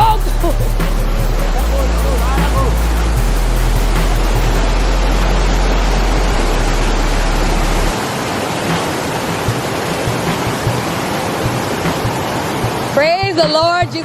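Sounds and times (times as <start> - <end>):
low deep tone: 0.0 - 8.0
waterfall roaring: 0.0 - 14.0.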